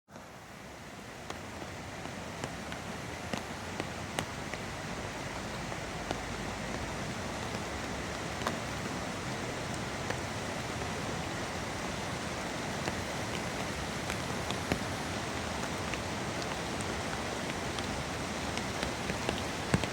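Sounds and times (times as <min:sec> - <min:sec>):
steady rain falling: 0:00.1 - 0:19.9.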